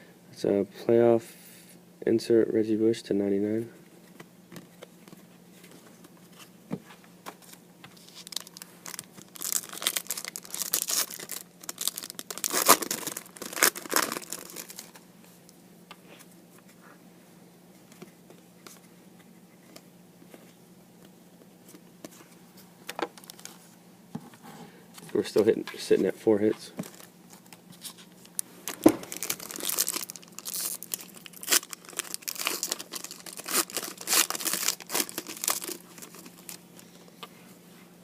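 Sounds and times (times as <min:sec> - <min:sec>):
foil wrapper tearing and crinkling: 0:08.1 - 0:15.0, 0:28.7 - 0:36.6.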